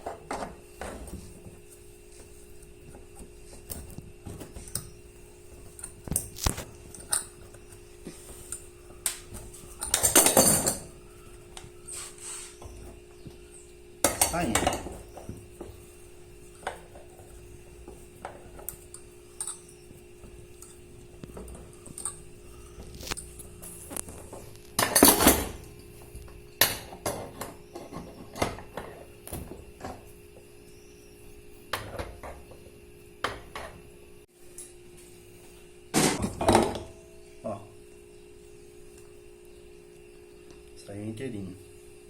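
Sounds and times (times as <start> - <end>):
steady low hum: 0.0 - 42.0
metal tools clinking and knocking: 8.4 - 11.0, 18.2 - 20.8, 24.8 - 25.6.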